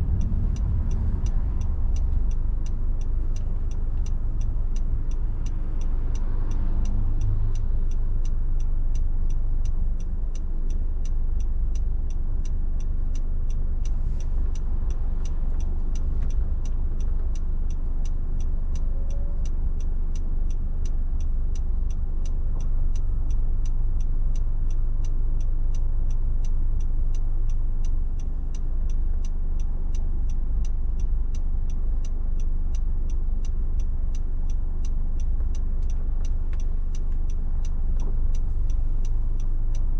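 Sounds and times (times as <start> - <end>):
car road and tyre rumble: 0.0 - 39.9
faint regular ticking: 0.0 - 39.9.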